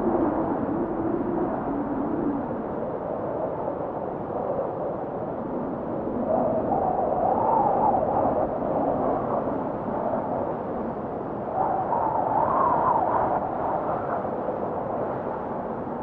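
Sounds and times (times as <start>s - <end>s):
gusting blizzard wind whistling: 0.0s - 16.0s.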